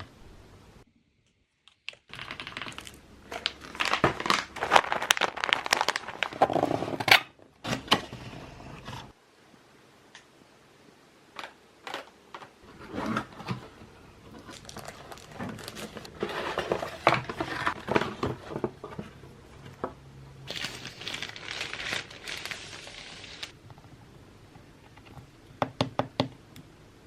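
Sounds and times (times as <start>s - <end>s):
plastic packaging crinkling: 1.9s - 7.3s, 12.7s - 19.8s, 20.5s - 23.6s.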